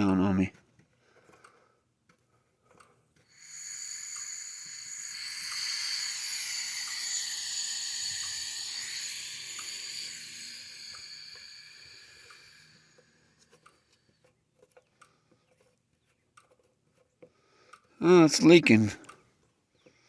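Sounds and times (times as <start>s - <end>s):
compressed air hissing from leak: 3.3s - 13.4s
small clicks and taps: 13.6s - 18.0s.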